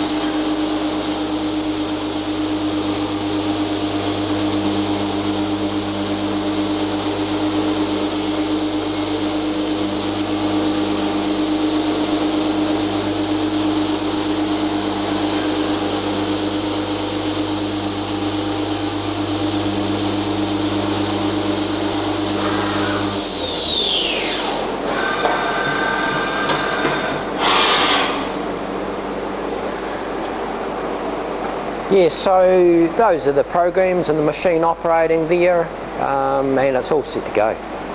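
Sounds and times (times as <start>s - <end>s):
machine spindle whine: 0.0s - 33.0s.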